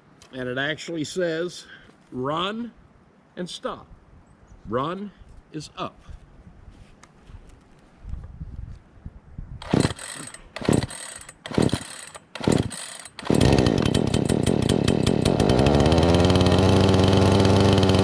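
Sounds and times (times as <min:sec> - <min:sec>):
chainsaw engine idling: 0:09.6 - 0:18.0
starter cord pulls: 0:09.6 - 0:18.0.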